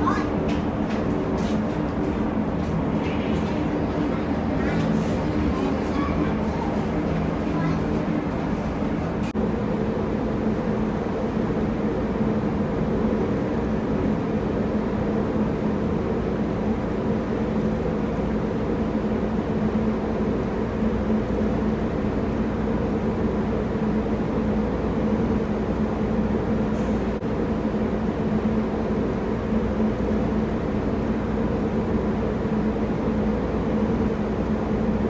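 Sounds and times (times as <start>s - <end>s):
boat engine droning: 0.0s - 22.7s.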